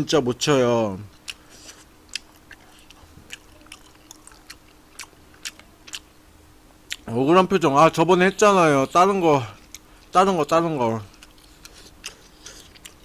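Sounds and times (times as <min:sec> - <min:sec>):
man chewing food: 0:01.1 - 0:06.2, 0:06.9 - 0:07.1, 0:09.6 - 0:10.2, 0:11.0 - 0:13.0.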